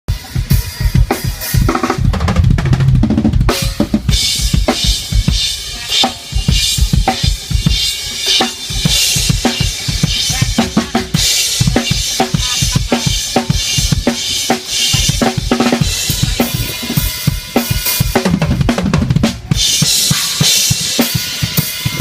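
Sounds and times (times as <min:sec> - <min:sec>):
drum beat with ringing cymbals: 0:00.1 - 0:22.0
rapid low drum hits: 0:00.8 - 0:05.5.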